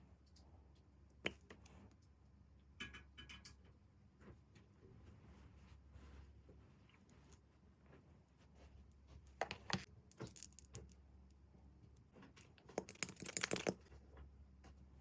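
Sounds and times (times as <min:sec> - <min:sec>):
packaging taps and clicks: 0:09.4 - 0:10.6, 0:12.6 - 0:13.8.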